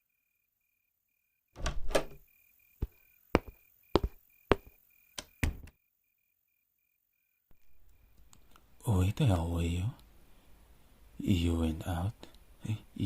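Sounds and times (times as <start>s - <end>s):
door opening and shutting: 1.6s - 2.2s, 5.4s - 5.7s
footsteps: 2.8s - 4.8s.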